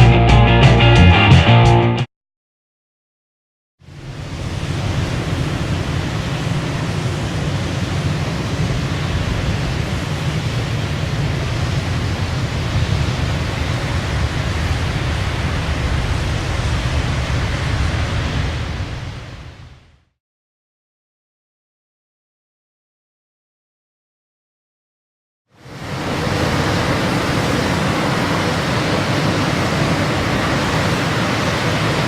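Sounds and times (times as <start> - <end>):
rushing noise with low rumble: 3.8 - 20.2, 25.6 - 32.0.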